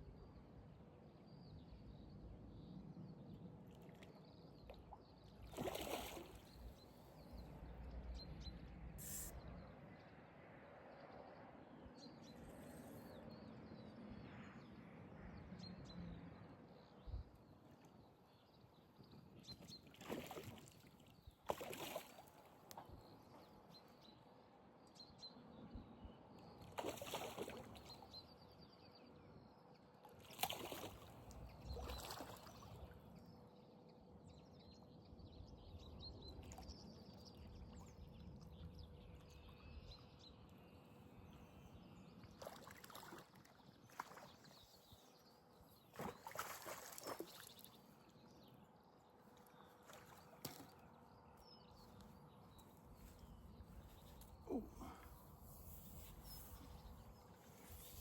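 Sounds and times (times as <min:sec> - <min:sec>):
faint bird chirps: 0:05.5 - 0:09.7, 0:49.2 - 0:58.0.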